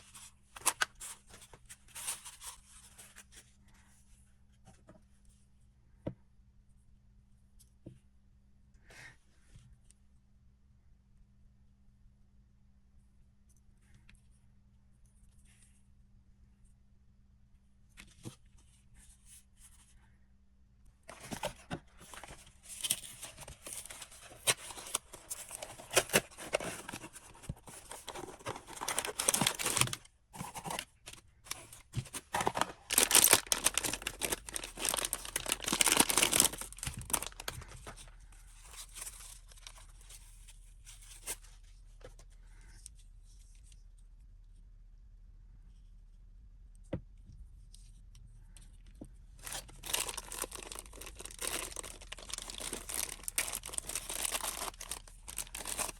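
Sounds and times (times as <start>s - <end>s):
packaging tearing and crinkling: 21.1s - 37.8s, 49.4s - 55.9s.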